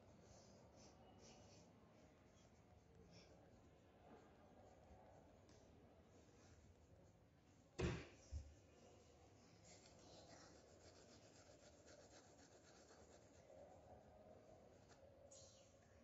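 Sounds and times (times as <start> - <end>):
pencil scratching on paper: 9.6 - 13.7.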